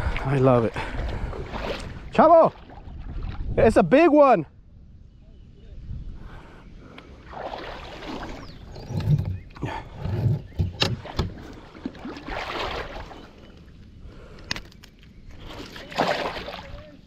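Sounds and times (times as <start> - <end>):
water splashing around a kayak: 0.0 - 3.7, 7.0 - 14.1, 15.3 - 17.0.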